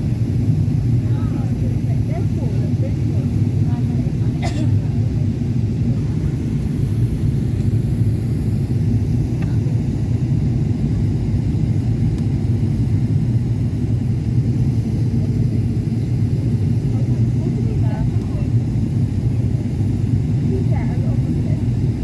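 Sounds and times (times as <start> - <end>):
airplane cabin engine rumble: 0.0 - 22.0.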